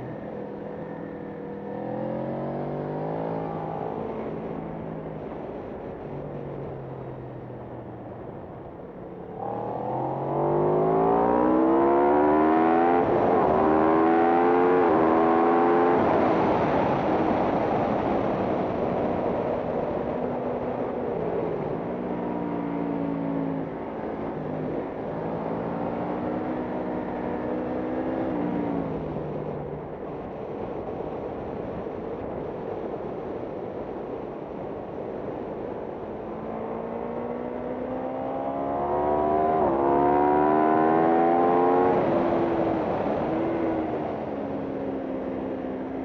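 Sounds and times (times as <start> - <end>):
racing motorcycle engine: 9.1 - 30.2, 35.6 - 46.0.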